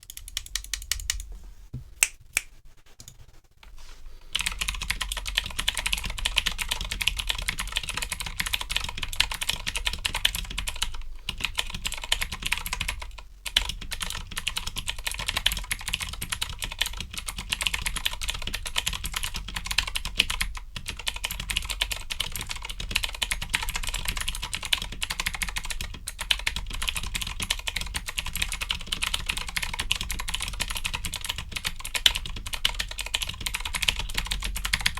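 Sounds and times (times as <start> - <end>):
mechanical keyboard typing: 0.0 - 1.3, 4.4 - 34.9.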